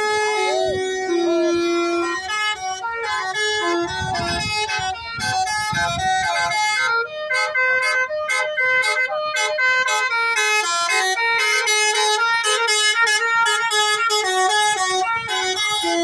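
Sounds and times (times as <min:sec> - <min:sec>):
multi-tone bus air horn tune: 0:00.0 - 0:16.0.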